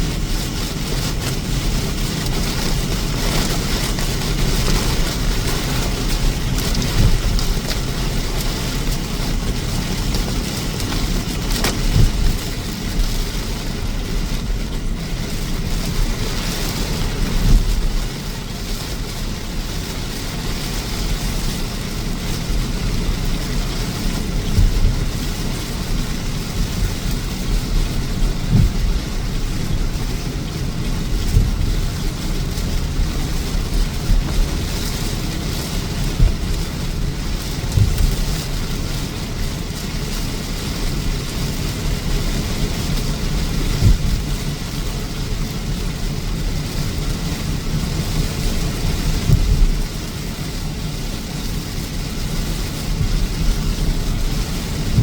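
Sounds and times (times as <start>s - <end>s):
car thumps: 1.0s - 13.1s, 24.5s - 25.1s, 28.2s - 38.3s, 43.8s - 44.3s, 54.6s - 55.0s.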